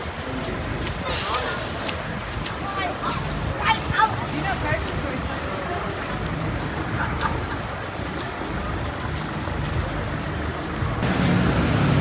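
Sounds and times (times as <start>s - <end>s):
road traffic rumble: 0.0s - 12.0s
heavy engine passing close: 10.4s - 12.0s.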